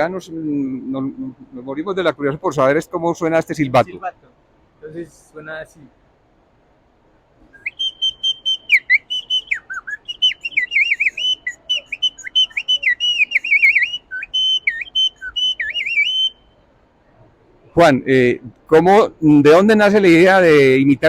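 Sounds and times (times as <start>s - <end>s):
bird-imitating whistle trilling: 7.5s - 16.6s.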